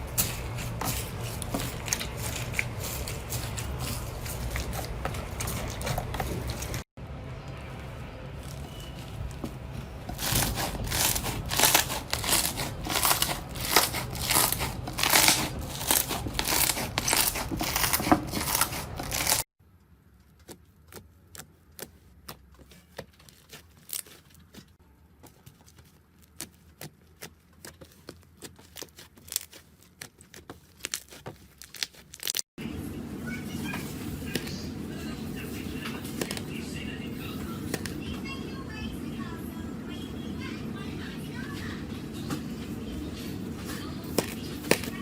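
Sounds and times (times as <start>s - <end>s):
slime crackling and popping: 10.2s - 19.4s.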